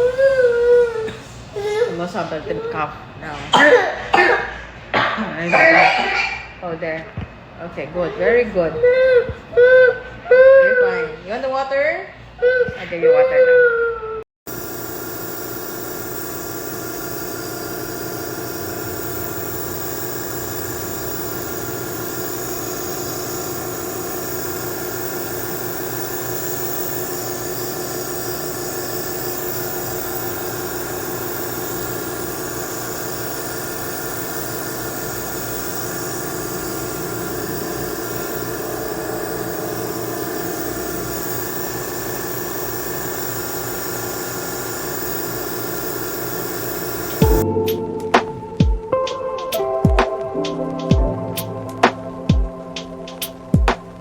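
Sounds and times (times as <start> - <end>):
even hiss: 14.5 - 54.0
machine hum: 14.5 - 54.0.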